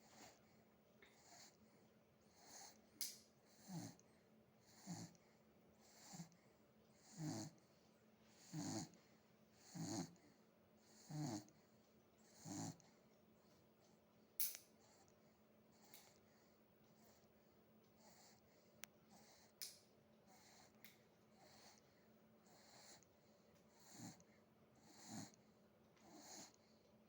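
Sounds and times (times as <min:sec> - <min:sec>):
pet snoring: 0:01.1 - 0:01.6, 0:02.3 - 0:02.8, 0:03.4 - 0:04.0, 0:04.6 - 0:06.4, 0:07.0 - 0:07.7, 0:08.3 - 0:13.0, 0:18.0 - 0:18.5, 0:19.1 - 0:19.6, 0:20.3 - 0:23.1, 0:23.7 - 0:26.8.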